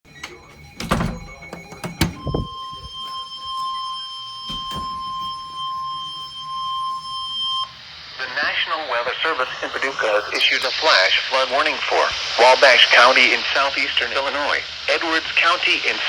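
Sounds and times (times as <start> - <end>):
high steady warning beep: 0.1 - 11.4.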